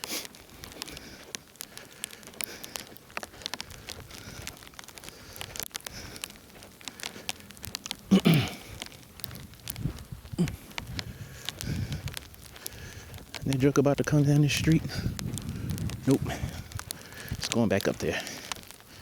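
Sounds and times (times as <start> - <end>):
footsteps crunching on snow and ice: 0.0 - 19.0
person grunting: 8.1 - 8.7, 10.3 - 10.6.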